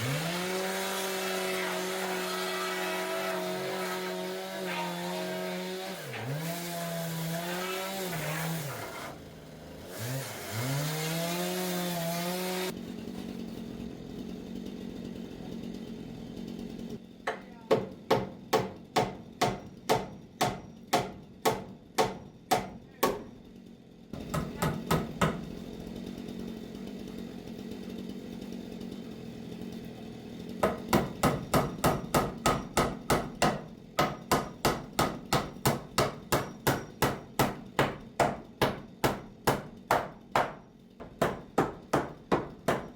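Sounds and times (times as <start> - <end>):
hammer driving nails into wood: 17.3 - 23.3, 24.2 - 25.4, 30.6 - 42.9.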